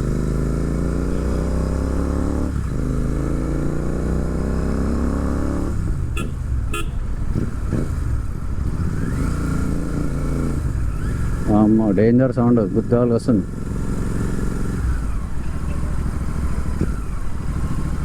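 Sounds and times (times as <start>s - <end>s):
motorcycle engine revving: 0.0s - 18.0s
motorcycle horn toots: 6.0s - 7.4s.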